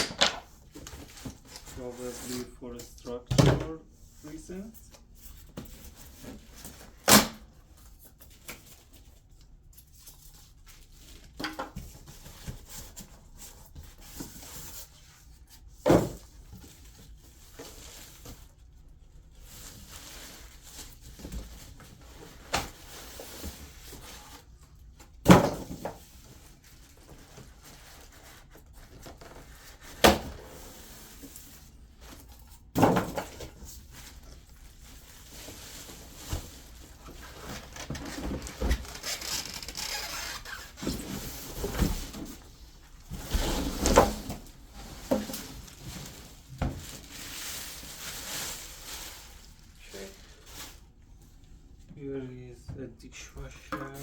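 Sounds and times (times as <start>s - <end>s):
packing rustling and scraping: 33.2s - 50.8s.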